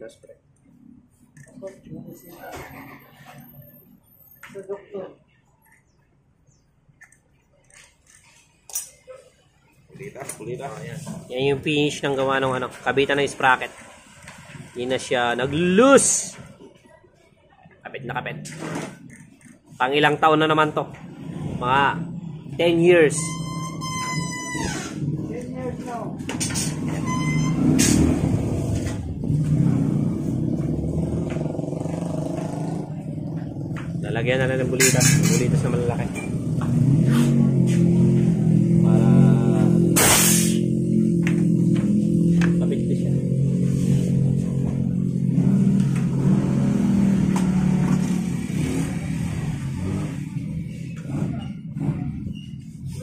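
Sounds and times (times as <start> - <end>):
vehicle engine running: 20.9 - 53.0
brief high tone: 23.1 - 24.7.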